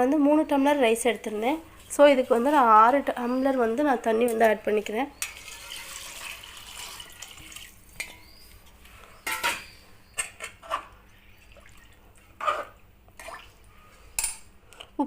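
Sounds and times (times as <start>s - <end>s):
water splashing into pot: 5.2s - 8.2s, 11.4s - 12.2s, 13.2s - 13.6s.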